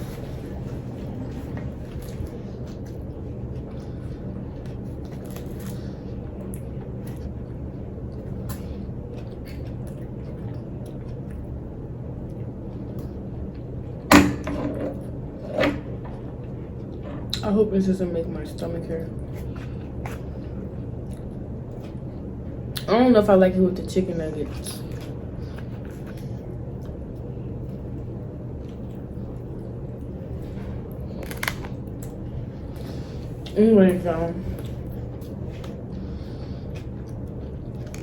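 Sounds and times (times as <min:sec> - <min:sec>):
steady low hum: 0:00.0 - 0:38.0
chewing food: 0:00.6 - 0:13.8, 0:18.6 - 0:22.9, 0:34.4 - 0:38.0.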